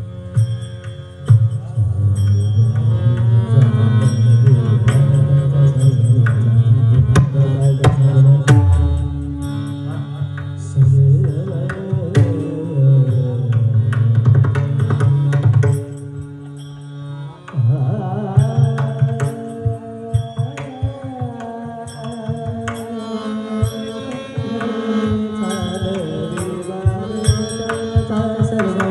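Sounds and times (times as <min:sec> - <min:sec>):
drum strokes: 0:07.1 - 0:12.6
devotional singing: 0:17.5 - 0:28.9.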